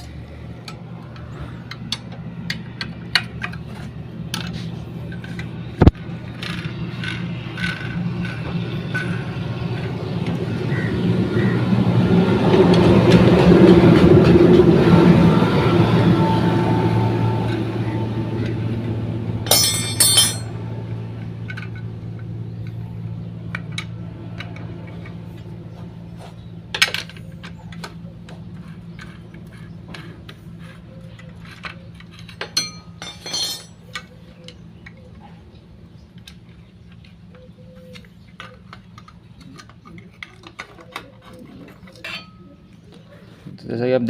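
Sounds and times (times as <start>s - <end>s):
metal clanks: 19.5s - 20.6s, 32.2s - 34.1s, 41.9s - 42.5s
metal clinks of spanner and parts: 19.5s - 20.6s, 31.2s - 34.1s, 38.4s - 42.4s.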